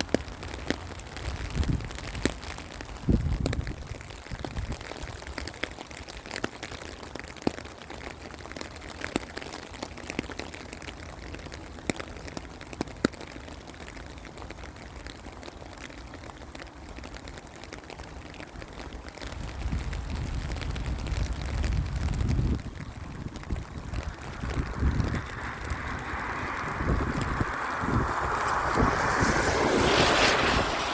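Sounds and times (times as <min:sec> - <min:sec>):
wind rumble on microphone: 0:00.0 - 0:05.6, 0:19.2 - 0:30.9
louder raindrop impacts: 0:00.0 - 0:30.9
rain falling: 0:00.0 - 0:30.9.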